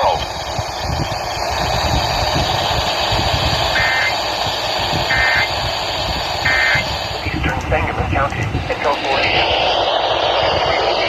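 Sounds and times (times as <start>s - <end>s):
steady radio static: 0.0s - 1.2s, 3.6s - 11.0s
warbling digital data chirps: 3.8s - 4.2s, 5.1s - 5.5s, 6.5s - 6.9s.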